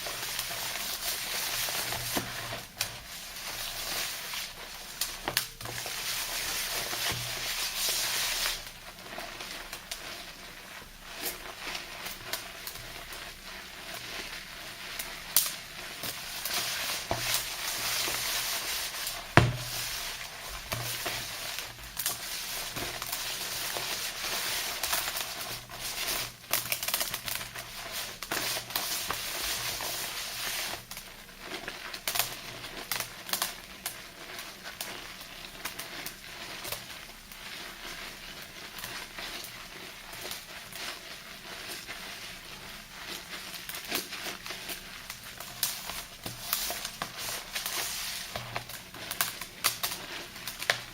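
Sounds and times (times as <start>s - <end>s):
wet squishing soap lather: 34.3s - 50.9s.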